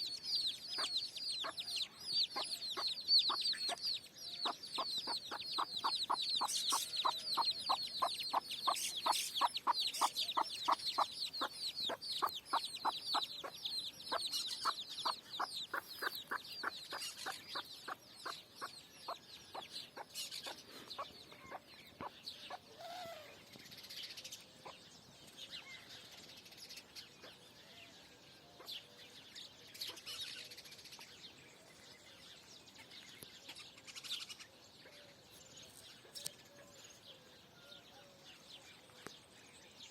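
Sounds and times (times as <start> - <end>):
chickens clucking: 4.4 - 22.7.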